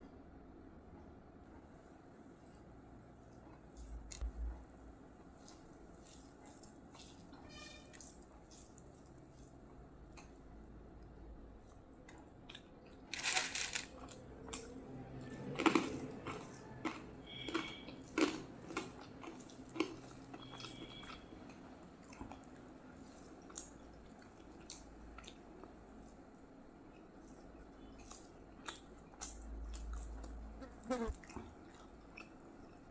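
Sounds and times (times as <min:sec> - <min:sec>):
wet chewing: 0:05.2 - 0:10.5, 0:13.9 - 0:26.2.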